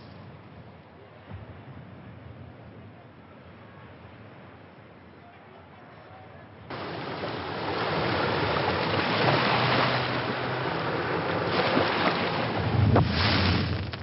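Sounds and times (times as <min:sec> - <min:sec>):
rushing seawater and wind: 0:06.7 - 0:14.0.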